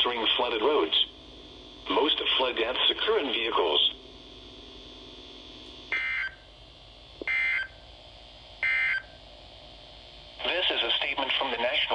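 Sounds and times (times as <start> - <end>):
faint radio hiss: 0.0 - 5.8, 10.4 - 11.9.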